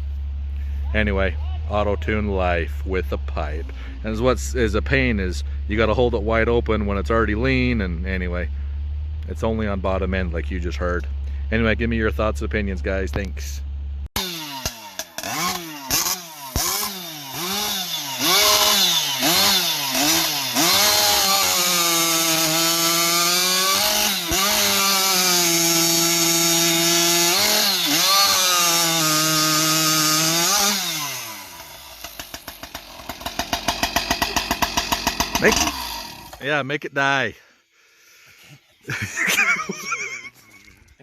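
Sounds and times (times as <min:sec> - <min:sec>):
man talking: 0:00.8 - 0:08.6, 0:09.2 - 0:13.6, 0:35.4 - 0:35.8, 0:36.4 - 0:37.5
chainsaw revving: 0:14.2 - 0:36.5.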